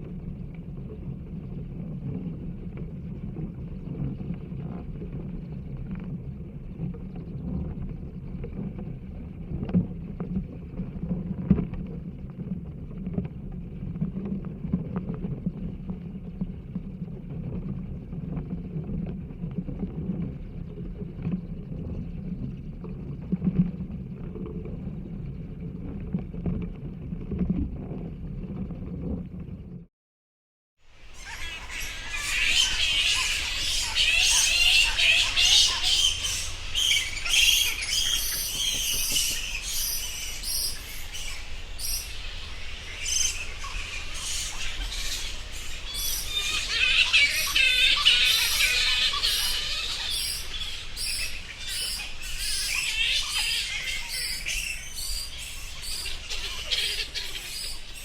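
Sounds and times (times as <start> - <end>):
bat wings fluttering: 31.0 - 53.3.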